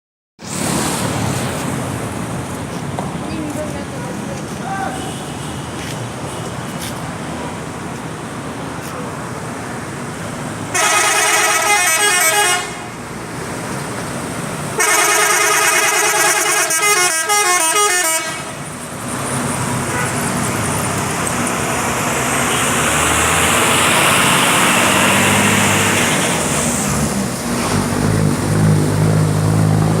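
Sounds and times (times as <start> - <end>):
bus and road noise: 0.4 - 30.0
musical air horn: 10.7 - 12.9, 14.8 - 18.6.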